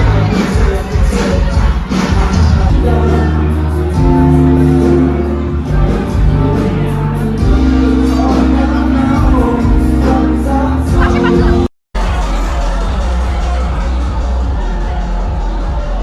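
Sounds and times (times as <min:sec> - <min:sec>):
person singing: 0:00.0 - 0:13.7
loud music with heavy bass: 0:00.0 - 0:16.0.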